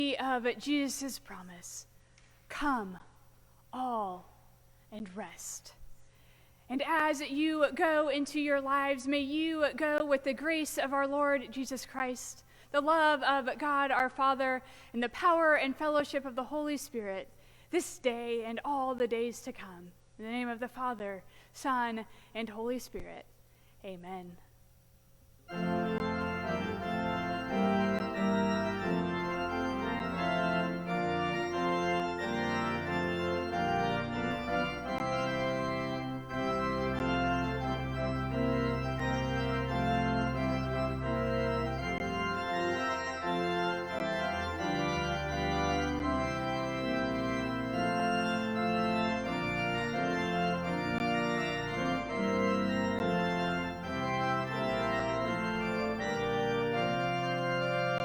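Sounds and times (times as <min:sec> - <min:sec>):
church organ playing chords: 0:25.5 - 0:58.0.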